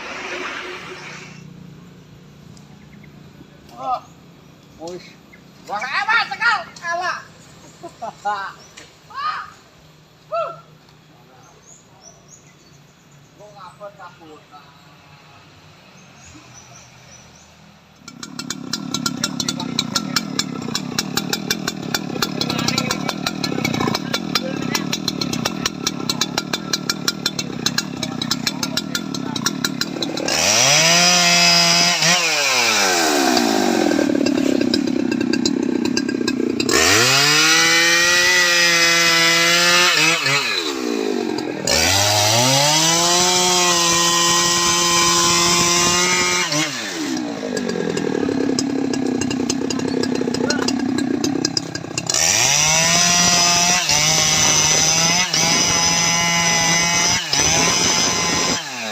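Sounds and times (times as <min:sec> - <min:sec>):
chainsaw idling and revving: 0:00.0 - 0:01.6, 0:17.9 - 0:58.9.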